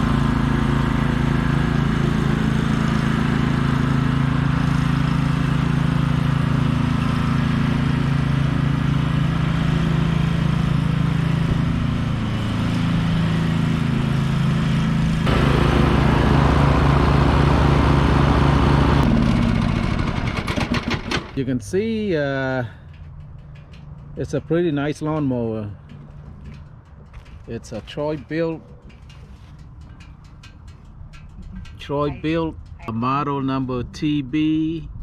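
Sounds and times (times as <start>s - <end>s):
lawn mower engine running: 0.0s - 21.4s.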